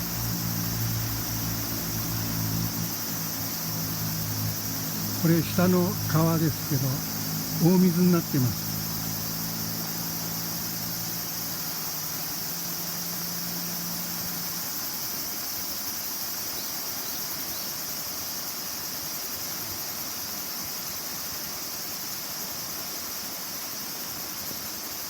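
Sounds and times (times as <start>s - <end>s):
mountain stream rushing: 0.0s - 14.6s.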